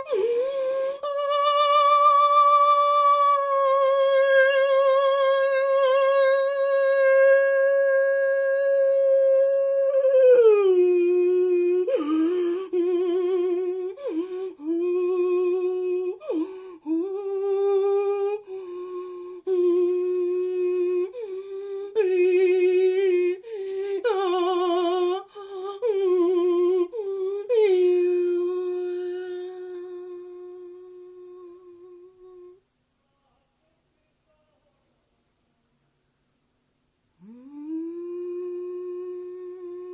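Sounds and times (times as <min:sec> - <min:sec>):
person singing sustained notes: 0:37.2 - 0:39.9.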